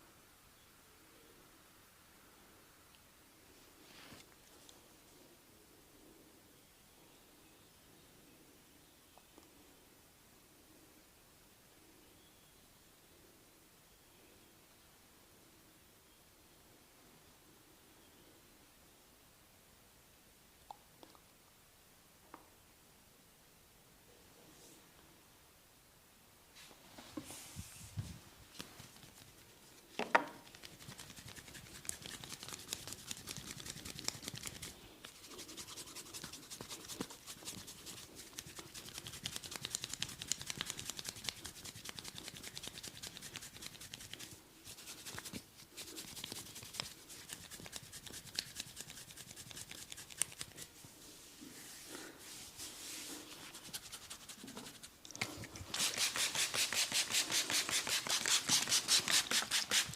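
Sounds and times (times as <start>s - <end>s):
fingers scratching through hair: 28.6s - 29.8s, 30.4s - 50.8s, 51.4s - 59.9s.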